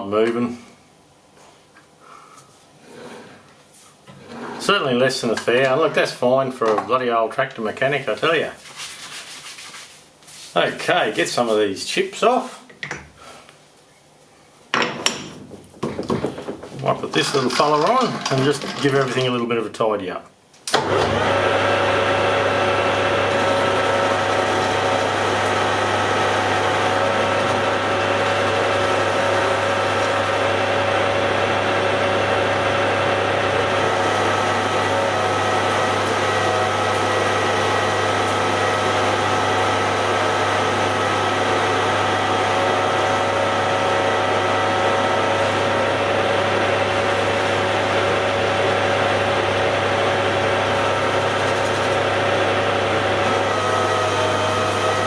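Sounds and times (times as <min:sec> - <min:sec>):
lathe motor hum: 0:20.8 - 0:55.0.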